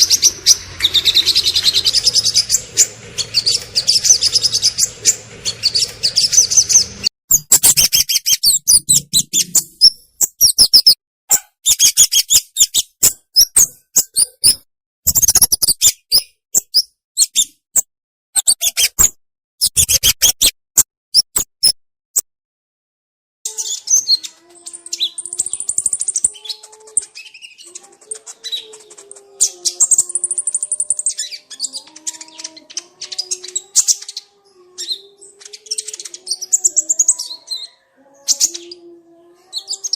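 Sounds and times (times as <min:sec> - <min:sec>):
songbirds chirping and trilling: 0:00.0 - 0:11.0, 0:23.5 - 0:39.9.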